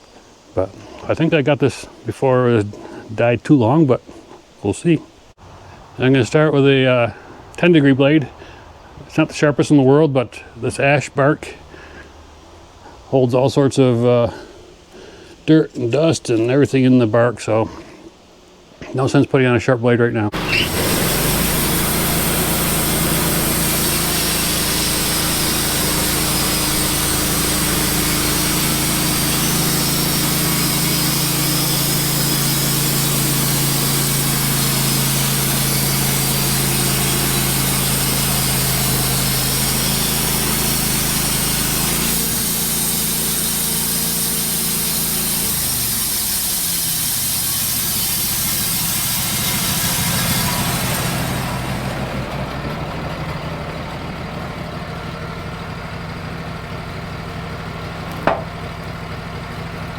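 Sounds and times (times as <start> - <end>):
bandsaw mill cutting log: 20.3 - 59.9.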